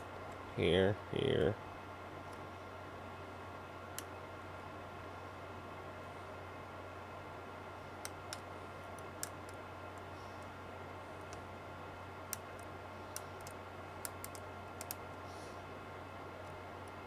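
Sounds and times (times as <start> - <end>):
steady low hum: 0.0 - 17.0
small sharp clicks: 12.3 - 15.0.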